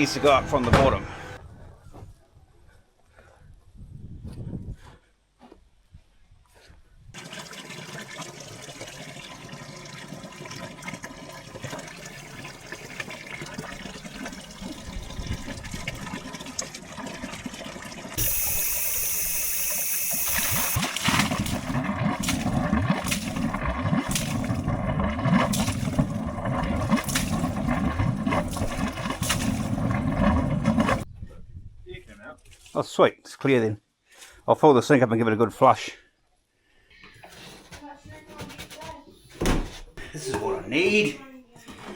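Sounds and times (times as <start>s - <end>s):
water running through pipe: 7.2s - 31.0s
knocks in drain: 20.9s - 31.0s.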